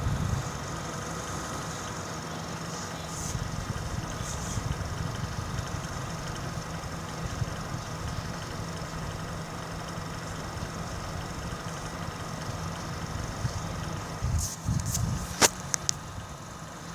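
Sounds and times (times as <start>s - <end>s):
short bumps: 14.2s - 15.9s.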